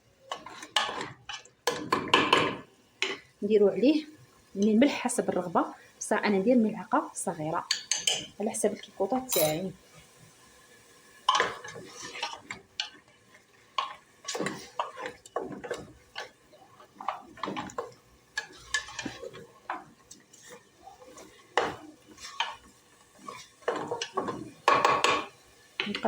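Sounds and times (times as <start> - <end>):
spoon scraping pot: 9.2 - 9.7.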